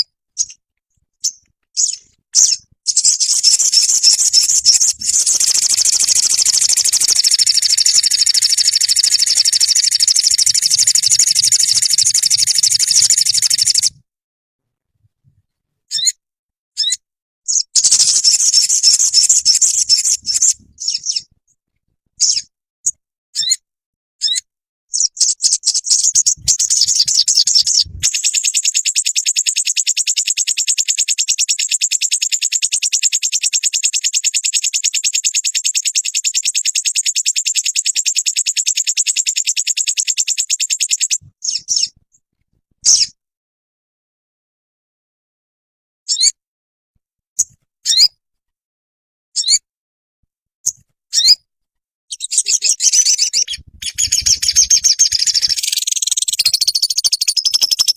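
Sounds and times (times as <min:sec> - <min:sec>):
songbird chirping: 0:00.0 - 0:00.6, 0:01.2 - 0:14.0, 0:16.8 - 0:21.4, 0:22.2 - 0:22.5, 0:24.2 - 0:42.0, 0:52.1 - 0:57.9
fast bird trill: 0:01.2 - 0:13.9, 0:16.8 - 0:21.3, 0:23.4 - 0:23.6, 0:24.2 - 0:42.0, 0:49.4 - 0:49.6, 0:51.1 - 0:51.4, 0:52.1 - 0:57.9.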